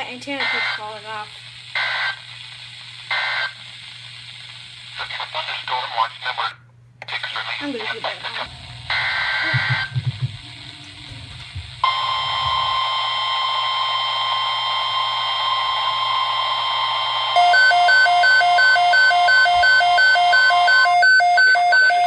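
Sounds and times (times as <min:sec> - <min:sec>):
radio static hiss: 0:00.0 - 0:17.3
steady warning alarm tone: 0:08.3 - 0:22.0
digital header screech: 0:08.4 - 0:13.1
rapid two-pitch beeping: 0:08.4 - 0:13.2, 0:17.4 - 0:22.0.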